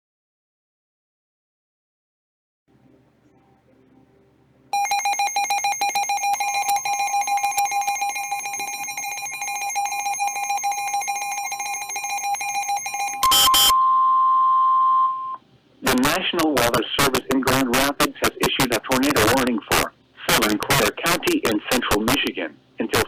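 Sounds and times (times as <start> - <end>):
steady high tone: 3.2 - 15.4
alarm attention tones: 4.8 - 16.4.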